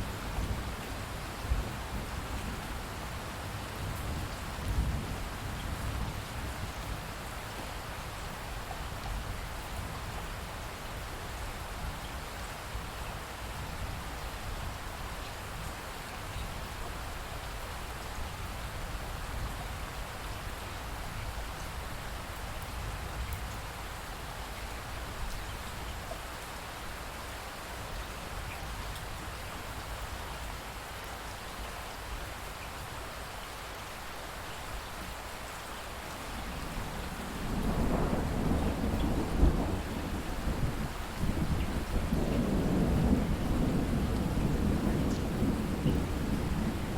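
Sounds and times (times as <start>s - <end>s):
low rumble of thunder: 0.0s - 7.4s, 36.3s - 46.9s
steady rainfall: 0.0s - 46.9s.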